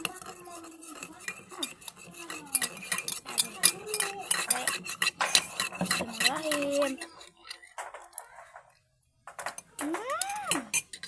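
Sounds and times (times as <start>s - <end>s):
spoon clinking against cup: 0.0s - 7.7s.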